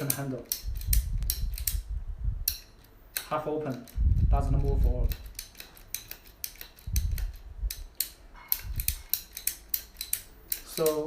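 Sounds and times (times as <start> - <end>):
ratchet cutter clicking: 0.0 - 11.0.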